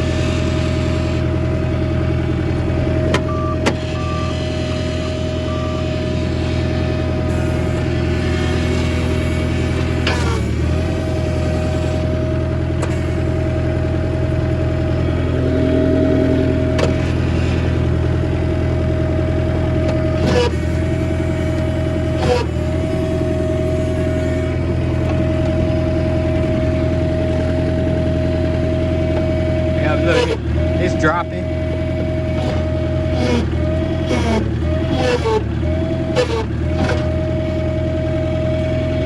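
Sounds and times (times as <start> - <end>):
skid steer engine hum with whine: 0.0 - 39.0.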